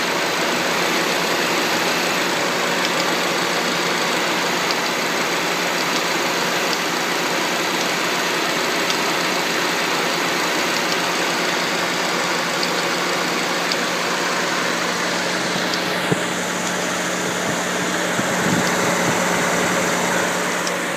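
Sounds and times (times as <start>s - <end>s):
car engine idling: 0.0s - 20.9s
faint light engine ticks: 4.6s - 5.0s, 5.8s - 6.1s, 13.6s - 13.9s.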